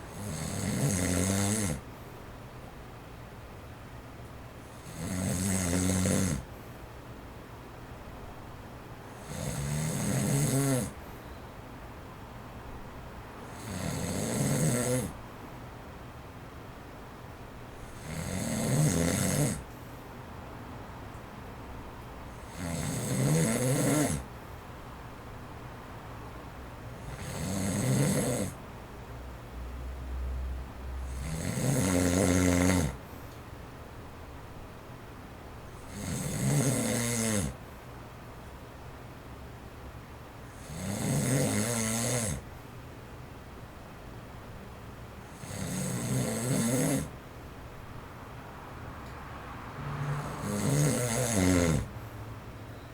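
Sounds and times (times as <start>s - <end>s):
electric fan whirring: 0.0s - 52.9s
man snoring: 0.1s - 1.8s, 4.8s - 6.5s, 9.2s - 11.0s, 13.5s - 15.2s, 17.8s - 19.6s, 22.4s - 24.3s, 27.0s - 28.6s, 31.1s - 33.0s, 35.9s - 37.6s, 40.6s - 42.4s, 45.3s - 47.1s, 50.0s - 52.0s
electric fan whoosh: 47.3s - 52.6s.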